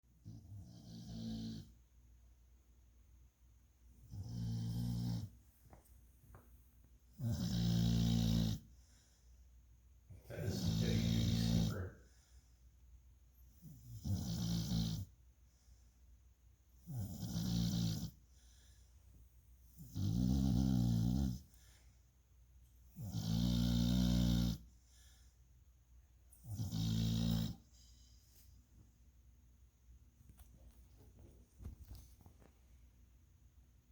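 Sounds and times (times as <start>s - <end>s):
pet snoring: 0.2s - 1.8s, 4.0s - 5.4s, 7.1s - 8.7s, 10.2s - 12.1s, 13.5s - 15.1s, 16.8s - 18.2s, 19.7s - 21.6s, 22.9s - 24.7s, 26.4s - 27.7s
soft breathing: 18.2s - 19.3s, 24.7s - 25.6s, 27.5s - 28.9s.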